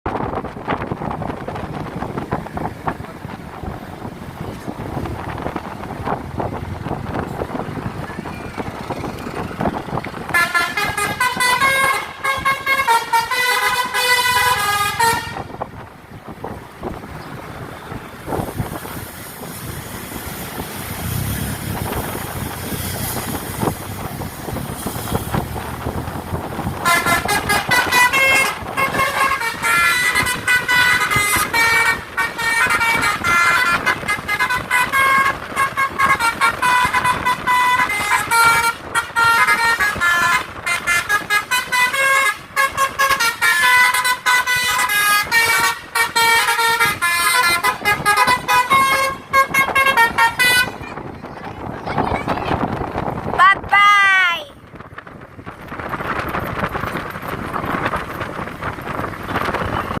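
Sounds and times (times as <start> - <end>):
vehicle engine and traffic: 0.0 - 60.0
musical air horn melody: 10.3 - 15.6, 26.8 - 50.8.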